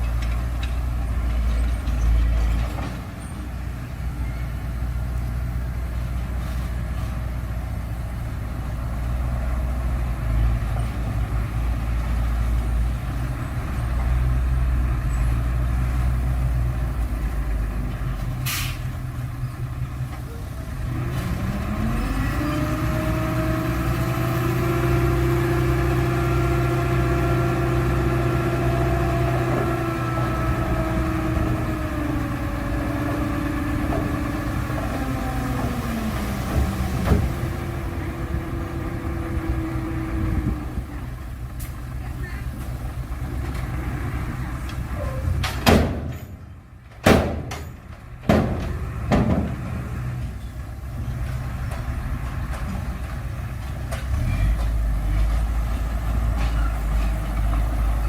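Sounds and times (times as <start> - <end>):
diesel engine revving: 3.6 - 58.0
short sharp hiss: 18.4 - 18.9.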